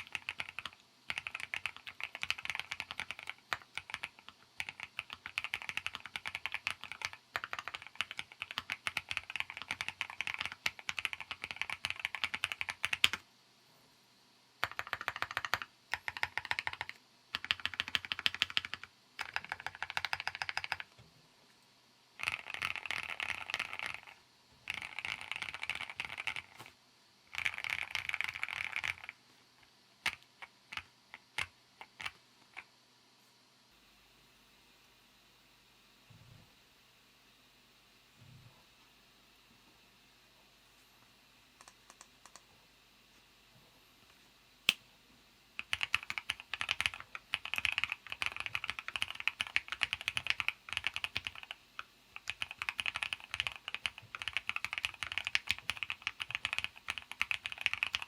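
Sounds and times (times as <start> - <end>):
mechanical keyboard typing: 0.0 - 13.2, 14.6 - 20.9, 22.2 - 26.7, 27.3 - 29.2, 30.0 - 32.7, 41.6 - 42.4, 45.6 - 58.0.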